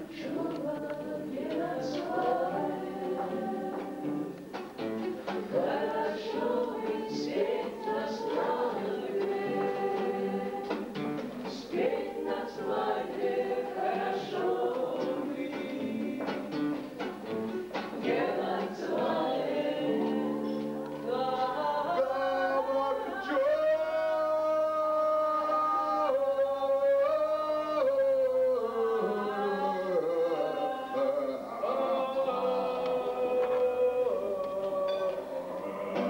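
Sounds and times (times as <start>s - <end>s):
person singing without words: 0.0s - 4.6s, 5.2s - 17.0s, 18.0s - 36.0s
instrumental accompaniment: 0.0s - 21.9s.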